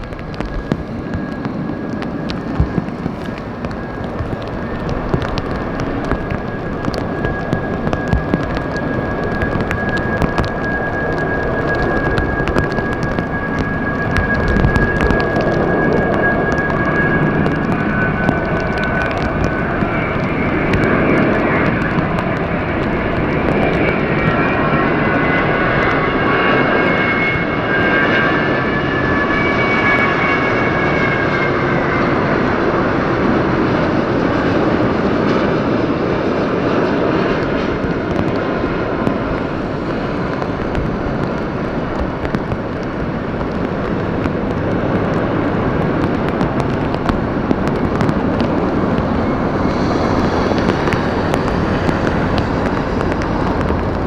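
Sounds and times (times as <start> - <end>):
rushing jet noise: 0.0 - 33.9, 42.8 - 54.0
jet engines whining: 0.1 - 32.2, 44.0 - 54.0.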